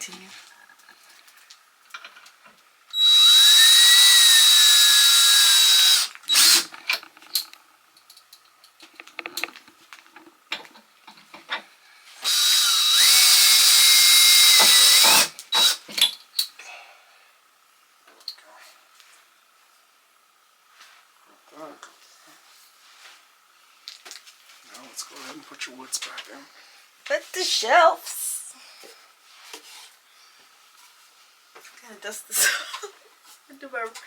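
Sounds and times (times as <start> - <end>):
power drill driving screws: 3.0 - 6.8, 12.2 - 15.8.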